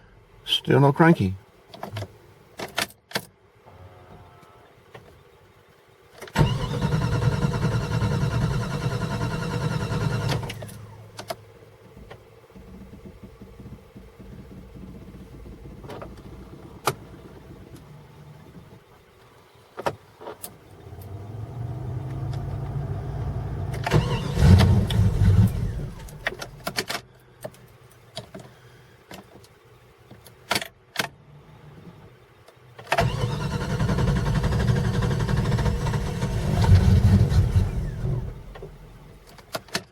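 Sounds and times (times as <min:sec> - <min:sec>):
engine starter cranking: 0:06.3 - 0:11.0, 0:23.7 - 0:26.7, 0:32.9 - 0:39.9.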